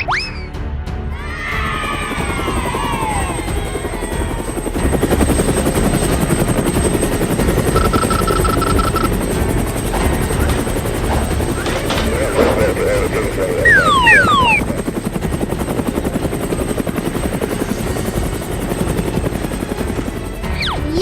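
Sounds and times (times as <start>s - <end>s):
falling whistle-like glides: 7.7s - 9.1s, 13.6s - 14.9s
rapid mechanical chopping: 7.7s - 14.8s
short beeps: 7.8s - 9.1s.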